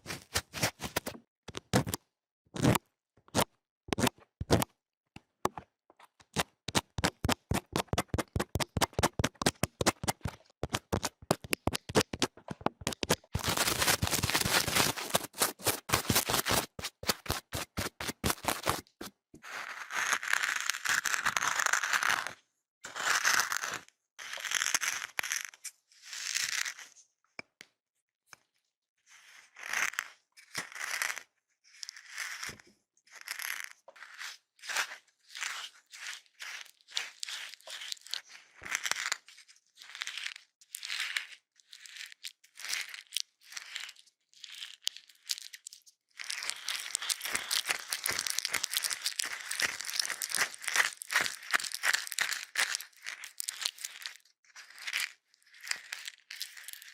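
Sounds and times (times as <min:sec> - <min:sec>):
sharp taps and clicks: 0:02.7 - 0:14.1
scratchy crinkly strokes: 0:13.2 - 0:19.0, 0:46.2 - 0:56.9.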